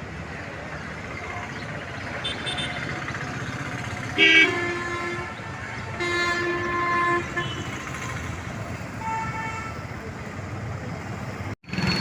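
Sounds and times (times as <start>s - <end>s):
traffic noise: 0.0s - 12.0s
vehicle horns honking: 2.2s - 3.0s, 4.1s - 9.9s.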